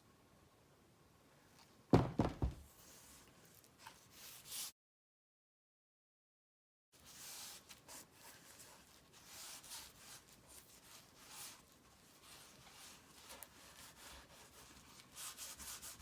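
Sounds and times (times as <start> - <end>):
paint scraping on canvas: 7.0 - 16.0.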